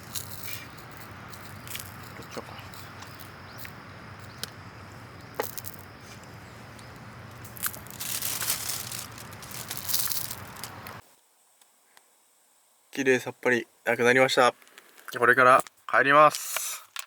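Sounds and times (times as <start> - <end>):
loud rustling and crinkling: 4.2 - 11.0.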